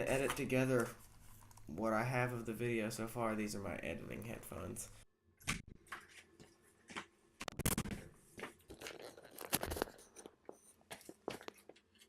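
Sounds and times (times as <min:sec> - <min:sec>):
objects handled near microphone: 0:07.4 - 0:12.0.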